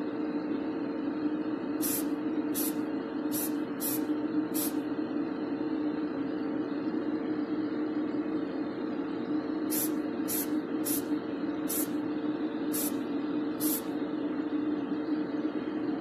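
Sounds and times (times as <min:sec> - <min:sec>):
steady hum: 0:00.0 - 0:16.0
aerosol spray hissing bursts: 0:01.8 - 0:04.8, 0:09.7 - 0:11.1, 0:11.7 - 0:12.0, 0:12.7 - 0:13.0, 0:13.6 - 0:13.9.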